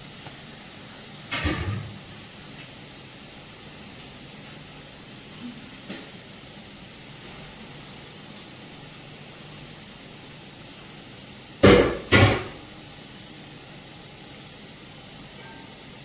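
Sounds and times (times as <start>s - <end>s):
steady hiss: 0.0s - 16.0s
loud ringing knocks: 11.6s - 12.6s.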